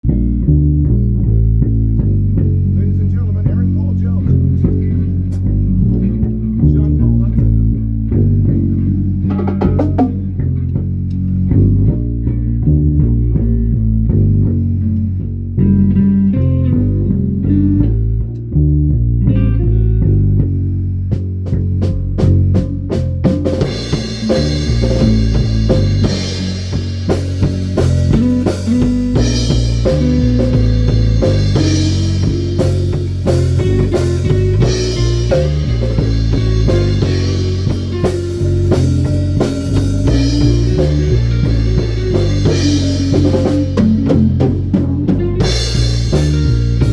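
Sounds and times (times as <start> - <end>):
band playing: 0.0 - 18.5, 19.2 - 46.9
bass guitar line: 0.0 - 46.9
drums: 0.0 - 46.9.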